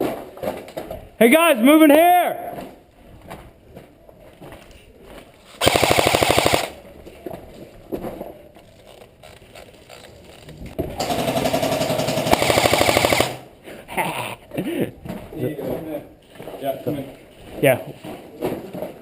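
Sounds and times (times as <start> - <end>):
airsoft gun firing full auto: 5.6 - 6.8, 11.0 - 13.5.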